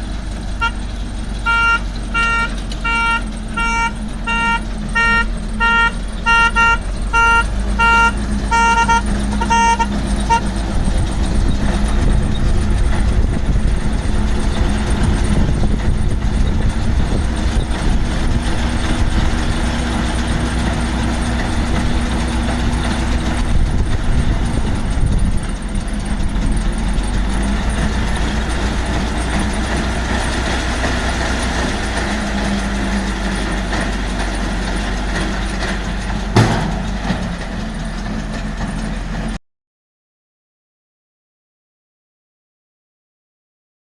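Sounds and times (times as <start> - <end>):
baler engine drone and clatter: 0.0 - 39.4
electronic beeper: 1.4 - 10.5.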